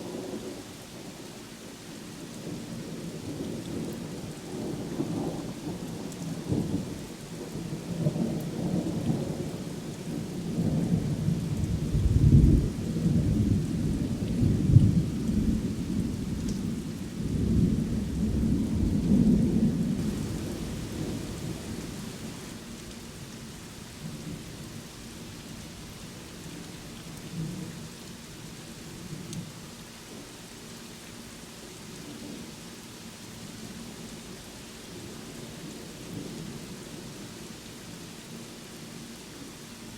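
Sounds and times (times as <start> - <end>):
steady rain falling: 0.0 - 39.9
rolling thunder: 11.1 - 22.6.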